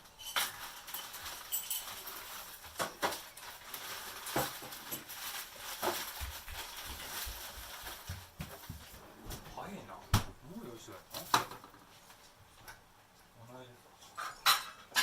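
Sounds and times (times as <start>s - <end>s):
faint steady hiss: 0.0s - 15.0s
dishes and utensils knocking: 14.1s - 15.0s.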